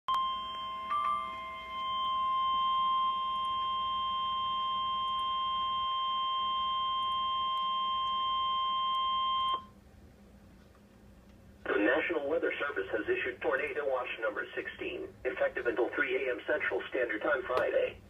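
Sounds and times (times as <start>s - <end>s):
steady alarm beep: 0.1s - 9.8s.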